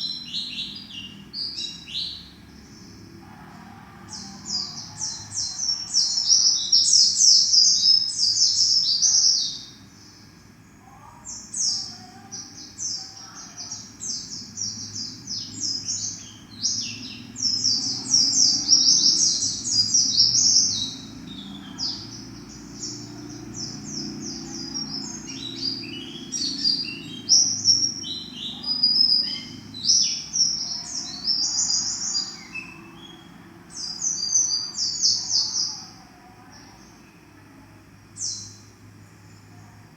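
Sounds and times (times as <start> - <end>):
bird high twittering song: 0.0 - 3.1, 4.1 - 37.3, 38.1 - 39.6.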